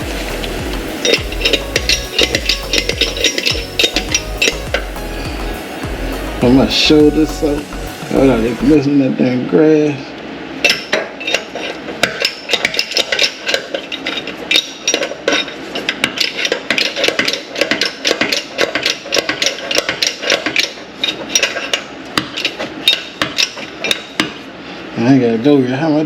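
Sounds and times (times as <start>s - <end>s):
hand tools clicking on metal: 0.4s - 4.9s, 10.6s - 24.3s.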